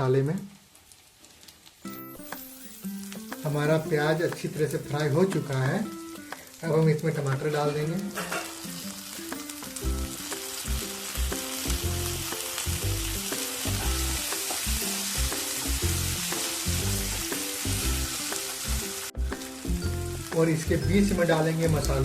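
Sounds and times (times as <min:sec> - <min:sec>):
vegetables sizzling in hot oil: 0:00.0 - 0:22.0
background music with bass: 0:09.8 - 0:22.0.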